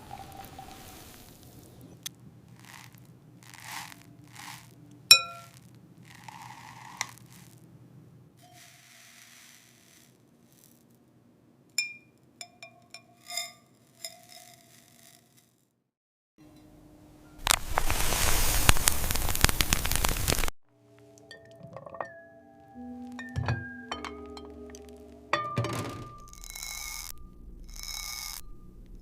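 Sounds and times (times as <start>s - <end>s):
soft scraping and crinkling: 0.4s - 7.7s, 8.4s - 11.0s, 17.4s - 21.1s
ringing glass clinks: 5.1s - 5.5s, 11.8s - 14.2s, 21.2s - 27.2s.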